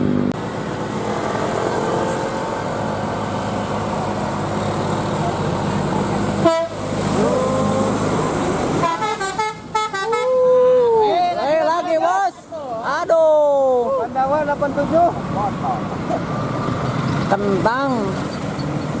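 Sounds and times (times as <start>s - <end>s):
bus engine running: 0.0s - 19.0s
melodic bus horn: 6.4s - 7.0s, 8.7s - 10.3s.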